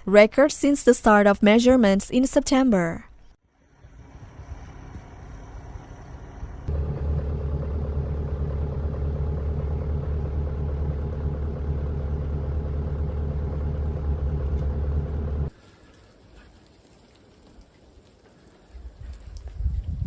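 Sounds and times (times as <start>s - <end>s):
low engine rumble: 3.6s - 15.6s.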